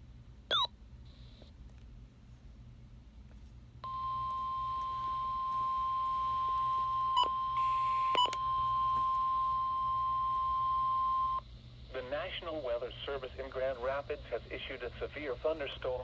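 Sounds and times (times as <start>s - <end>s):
high warning alarm tone: 3.8s - 11.4s.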